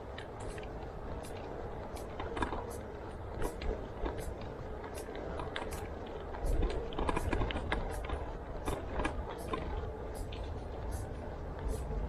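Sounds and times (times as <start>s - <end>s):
indistinct background voices: 0.0s - 12.0s
low rumble: 9.8s - 12.0s.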